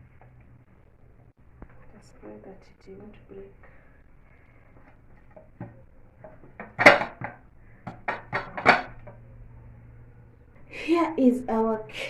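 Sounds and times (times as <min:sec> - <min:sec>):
metal pot knocking and clattering: 0:05.2 - 0:09.2.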